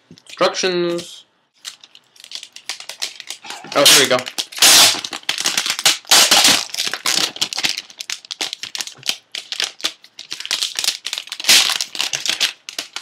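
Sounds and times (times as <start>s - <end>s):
packaging crinkling and rustling: 1.6s - 13.0s.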